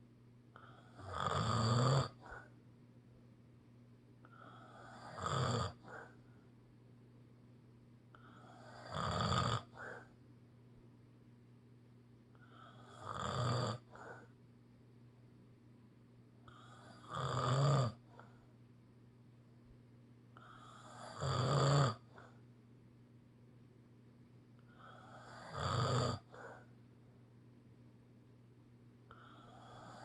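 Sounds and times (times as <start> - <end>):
loud snores: 0.6 - 2.5, 4.3 - 6.2, 8.2 - 10.1, 12.4 - 14.3, 16.5 - 18.2, 20.4 - 22.4, 24.8 - 26.6, 29.1 - 30.0.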